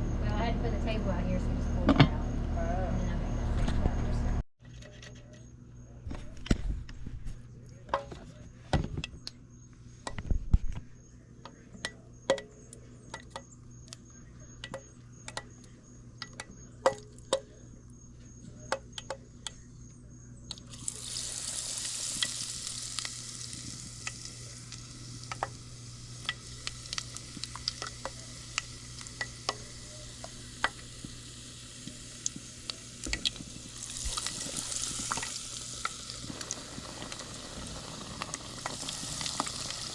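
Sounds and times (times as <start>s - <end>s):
fish frying in hot oil: 20.7s - 39.9s.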